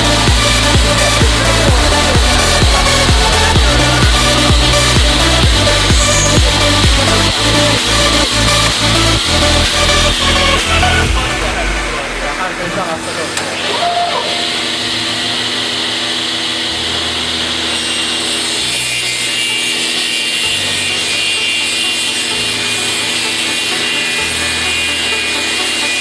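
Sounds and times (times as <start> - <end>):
bit cutting through board: 0.0 - 26.0
router spindle whine: 0.0 - 26.0.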